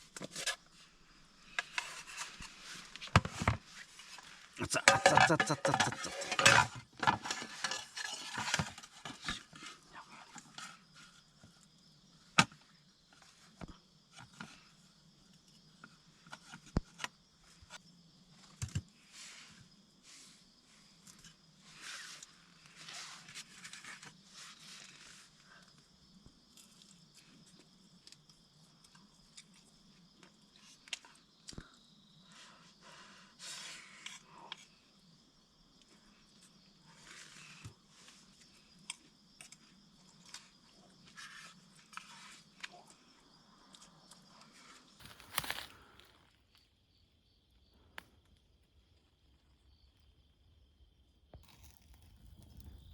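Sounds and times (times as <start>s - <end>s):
small objects tapping and rustling: 4.7s - 9.5s, 45.0s - 46.6s, 51.4s - 52.9s.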